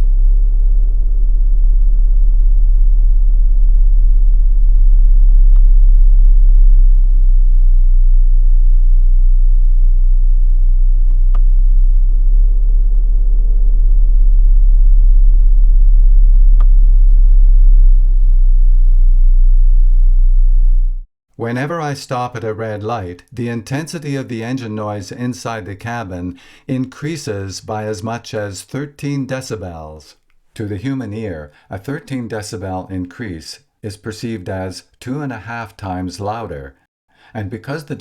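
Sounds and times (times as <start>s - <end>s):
low booming engine idling: 0.0s - 21.0s.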